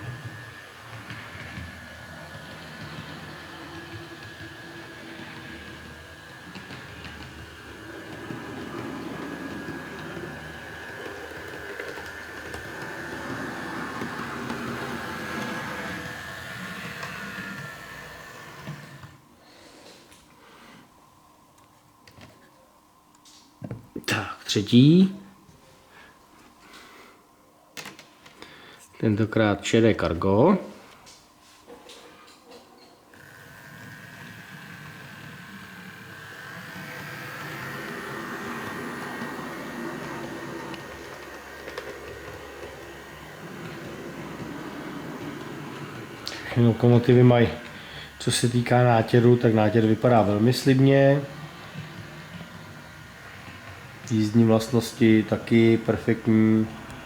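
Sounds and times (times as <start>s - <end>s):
wheels rumbling on track: 0.0s - 19.0s, 33.3s - 57.0s
electric motor whining: 0.0s - 19.3s, 33.1s - 57.0s.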